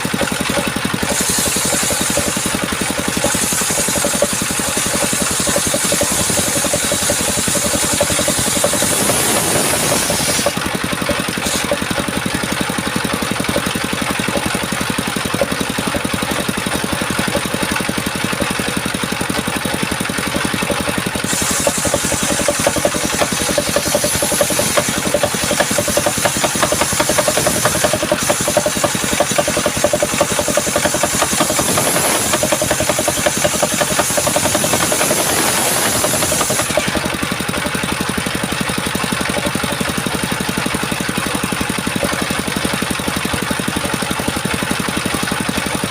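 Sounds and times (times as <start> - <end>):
circular sawmill engine running: 0.0 - 45.9
saw blade cutting wood hiss: 1.0 - 10.7, 11.3 - 11.8, 21.2 - 37.2.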